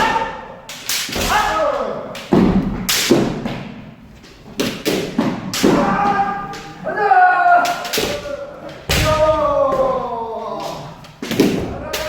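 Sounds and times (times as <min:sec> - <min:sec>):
bamboo sword strikes: 0:00.0 - 0:03.5, 0:04.6 - 0:06.3, 0:07.6 - 0:09.4
stamping footwork: 0:00.0 - 0:06.8
person shouting: 0:05.7 - 0:10.8.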